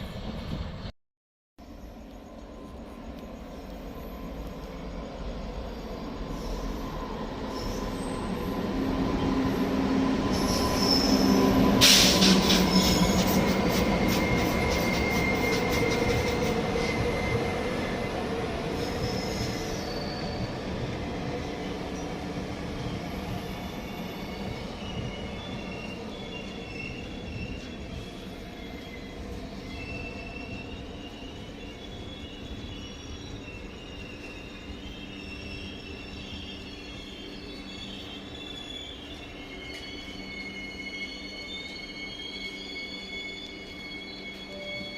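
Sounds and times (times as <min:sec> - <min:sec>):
train passing: 0:01.6 - 0:44.9
metallic wheel squeal: 0:10.3 - 0:17.4, 0:18.8 - 0:20.6, 0:23.5 - 0:44.9.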